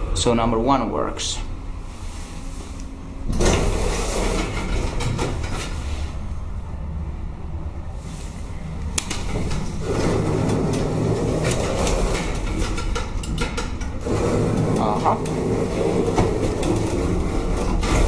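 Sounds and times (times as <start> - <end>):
hydraulic lift rumbling: 3.2 - 6.2, 8.9 - 18.0.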